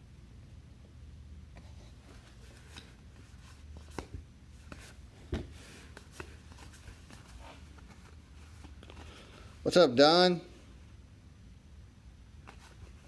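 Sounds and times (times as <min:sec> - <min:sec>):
low steady hum: 0:00.0 - 0:13.0
trading cards sliding and flipping: 0:01.5 - 0:09.6, 0:12.4 - 0:13.0.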